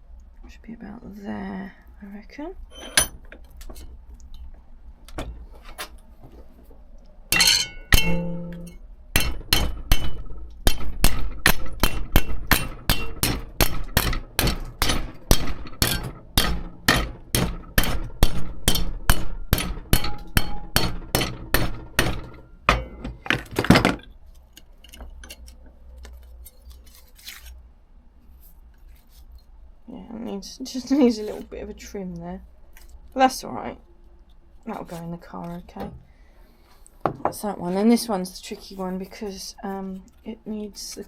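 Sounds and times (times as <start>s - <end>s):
hammer striking sheet steel: 7.4s - 23.0s.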